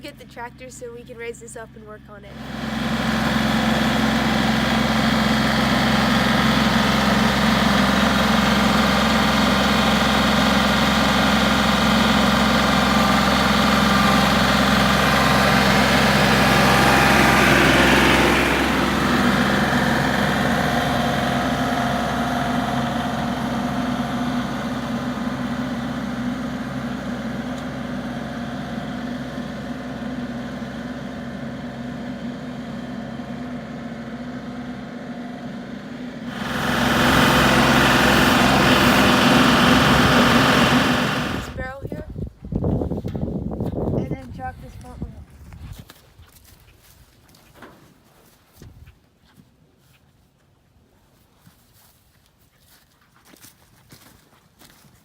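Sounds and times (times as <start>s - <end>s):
tractor engine running: 0.0s - 42.1s.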